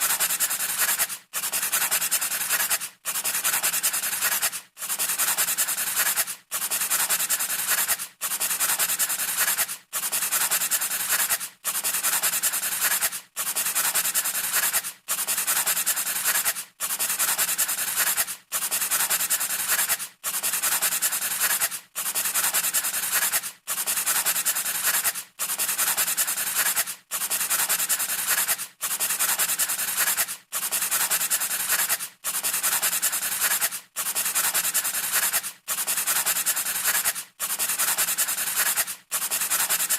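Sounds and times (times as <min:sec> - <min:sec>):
scratchy scraping noise: 0:00.0 - 0:04.5, 0:27.5 - 0:39.9.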